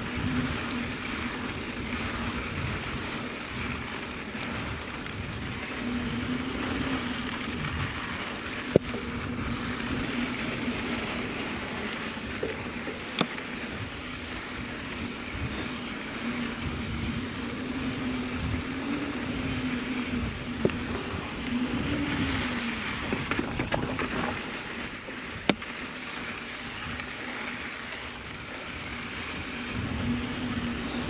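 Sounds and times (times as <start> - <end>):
whirring hum: 0.0 - 25.7, 28.6 - 31.0
bike tyres on dirt trail: 0.0 - 31.0
bike rattling clicks: 3.7 - 13.8, 18.3 - 25.8.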